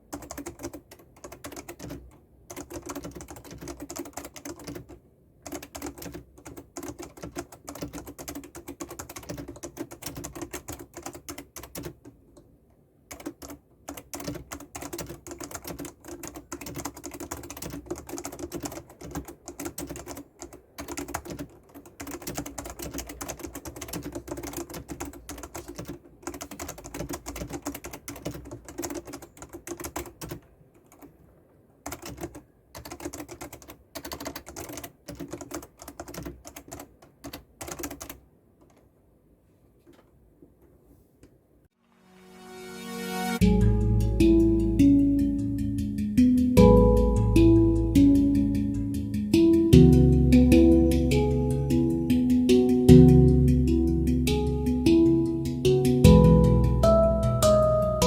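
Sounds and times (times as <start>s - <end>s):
fast keyboard typing: 0.0s - 12.2s, 13.1s - 31.2s, 31.8s - 38.8s.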